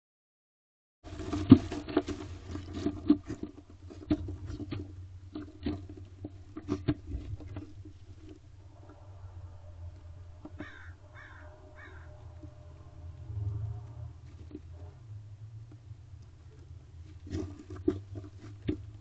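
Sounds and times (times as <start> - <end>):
steady low hum: 1.1 - 19.0
owl scraping and knocking: 10.4 - 12.8.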